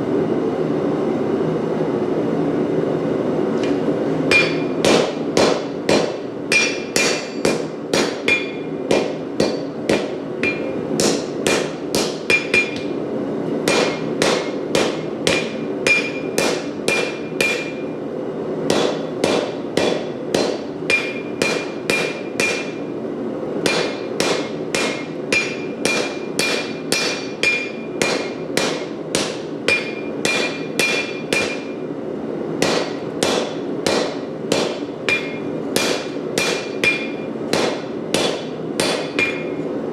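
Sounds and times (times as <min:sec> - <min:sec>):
forge burner roaring: 0:00.0 - 0:39.9
hammer ringing on anvil: 0:04.3 - 0:13.0, 0:13.7 - 0:18.0, 0:18.7 - 0:22.9, 0:23.6 - 0:31.9, 0:32.6 - 0:39.7.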